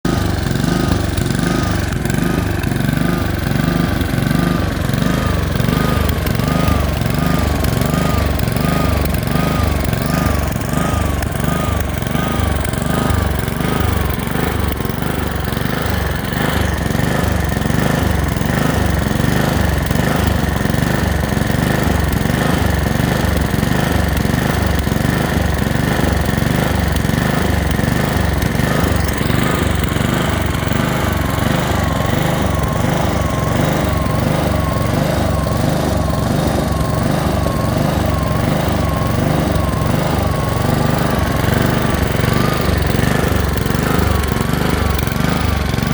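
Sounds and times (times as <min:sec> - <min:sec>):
lawn mower engine surging: 0:00.0 - 0:45.9.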